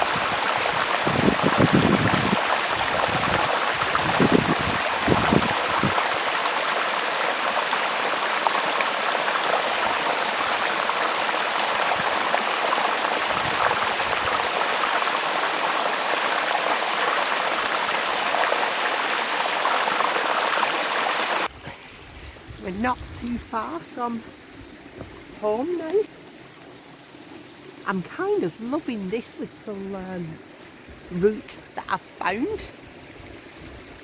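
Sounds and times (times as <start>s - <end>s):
stream rushing over rocks: 0.0s - 21.6s.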